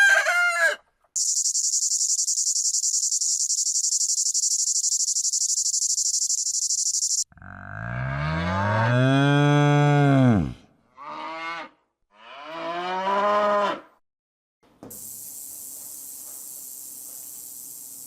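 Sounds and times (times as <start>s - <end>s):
cow mooing: 7.3s - 13.9s
steady hiss: 14.9s - 18.0s.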